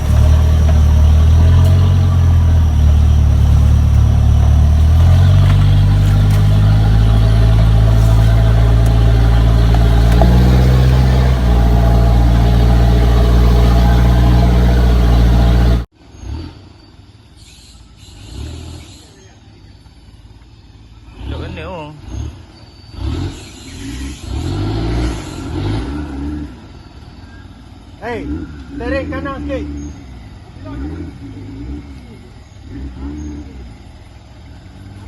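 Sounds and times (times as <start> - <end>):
car engine revving: 0.0 - 16.6.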